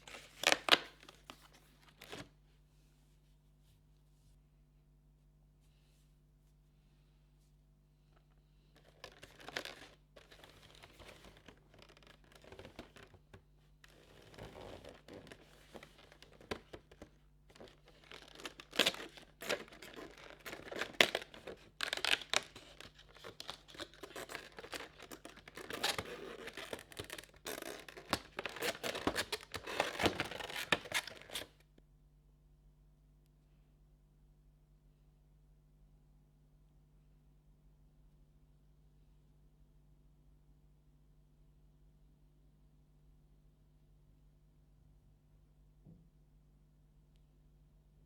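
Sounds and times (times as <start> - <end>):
packaging being torn and crinkled: 0.0 - 2.3, 8.8 - 13.2, 14.2 - 31.6.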